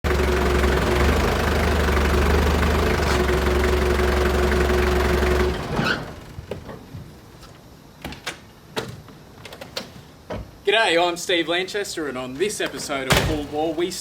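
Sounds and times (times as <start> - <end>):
vehicle engine idling: 0.0 - 6.5.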